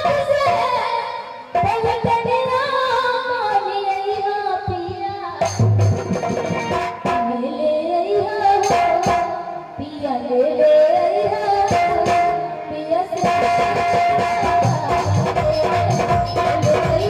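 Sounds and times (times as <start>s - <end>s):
drum strikes: 5.4s - 7.4s, 8.6s - 9.4s, 11.6s - 12.6s, 13.2s - 17.0s
ornamented song melody: 5.4s - 9.9s, 10.7s - 17.0s.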